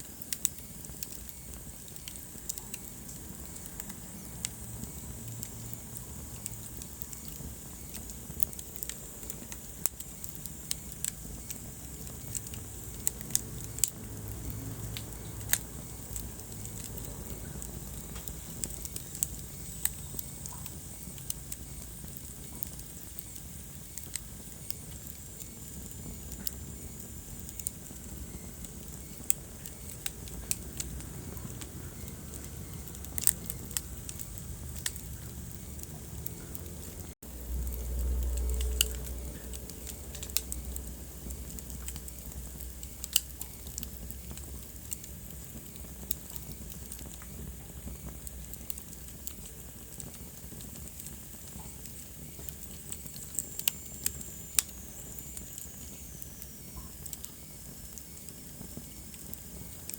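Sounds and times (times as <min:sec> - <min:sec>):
low rumble of flames: 0:00.0 - 0:59.9
wood fire crackling: 0:00.0 - 0:59.9.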